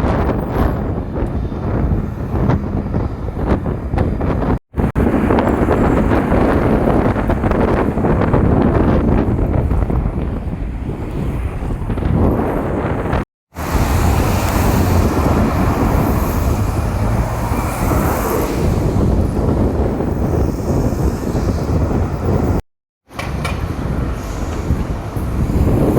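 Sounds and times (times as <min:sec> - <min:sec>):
wind buffeting microphone: 0:00.0 - 0:25.9.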